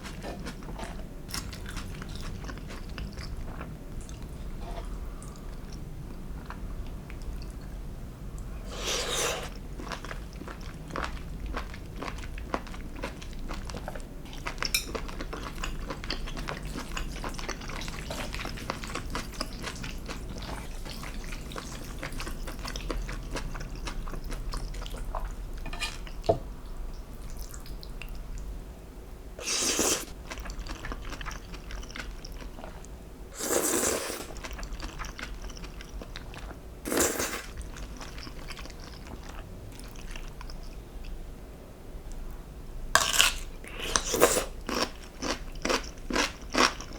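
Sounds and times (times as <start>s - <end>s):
chewing: 8.7s - 26.3s, 29.4s - 40.8s
utensils scraping dishes: 25.6s - 26.1s.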